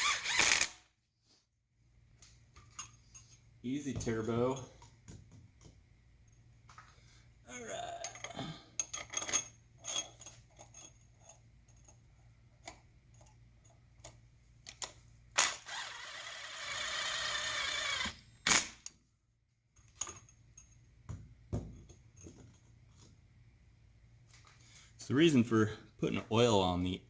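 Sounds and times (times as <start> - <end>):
metal tools clinking: 8.0 - 12.0.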